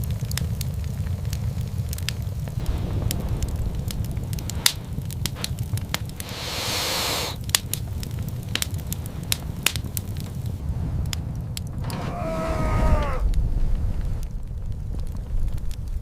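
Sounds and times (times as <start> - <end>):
wood fire crackling: 0.0 - 16.0
low rumble: 2.0 - 16.0
brief hiss: 2.6 - 7.4.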